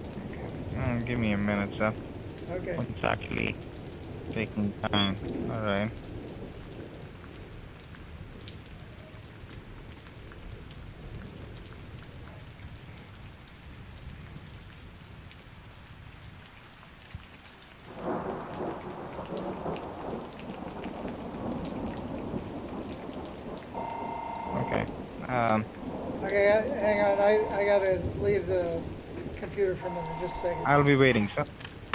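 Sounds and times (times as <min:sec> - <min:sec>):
steady rain: 0:00.0 - 0:31.9
loud thunder roll: 0:03.6 - 0:07.1, 0:17.9 - 0:30.9
distant low rumble: 0:23.7 - 0:31.9.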